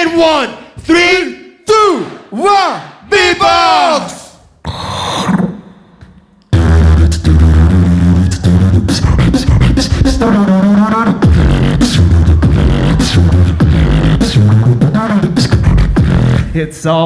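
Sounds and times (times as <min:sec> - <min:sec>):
beatbox bass tones: 0:04.6 - 0:16.8
beatbox clicks: 0:06.4 - 0:16.6
wavering high vocal sound: 0:06.7 - 0:16.0.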